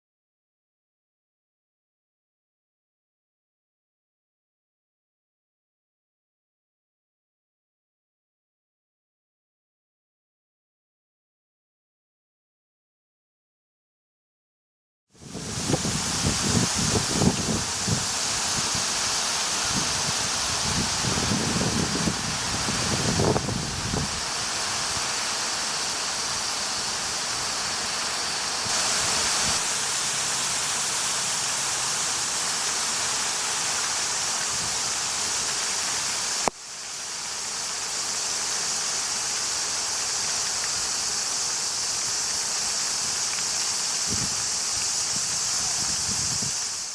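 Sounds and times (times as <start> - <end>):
rain and wind hissing: 15.2 - 46.9.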